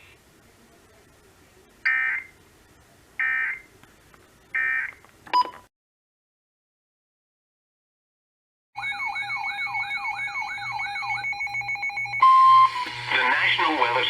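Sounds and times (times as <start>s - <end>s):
buzzy digital data tones: 8.8s - 14.0s.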